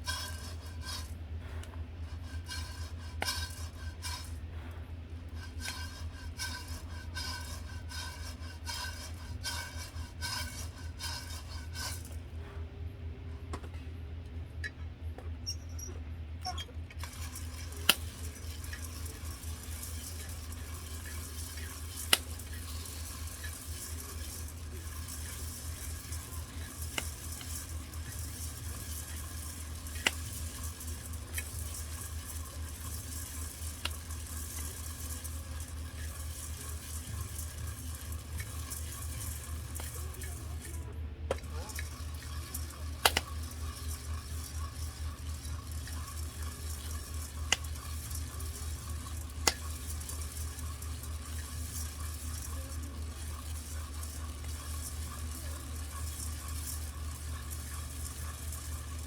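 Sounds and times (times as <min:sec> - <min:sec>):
food frying sizzle: 0:00.0 - 0:01.1, 0:17.0 - 0:40.8, 0:41.4 - 0:59.0.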